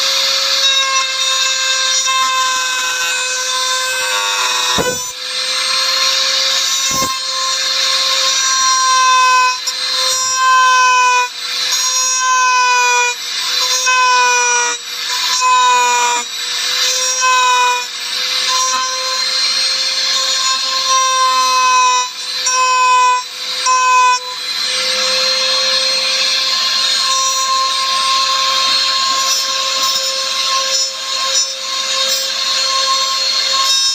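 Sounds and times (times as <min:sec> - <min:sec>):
wood router whining and cutting: 0:00.0 - 0:33.9
knocks: 0:04.7 - 0:05.1.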